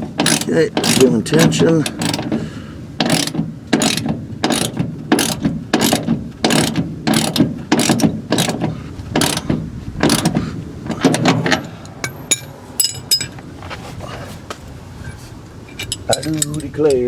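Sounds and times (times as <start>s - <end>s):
ratchet wrench clicking: 0.2s - 2.4s, 3.0s - 13.4s.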